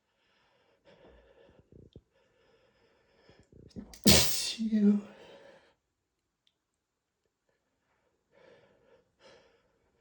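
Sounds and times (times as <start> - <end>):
man sneezing: 4.0 - 4.6.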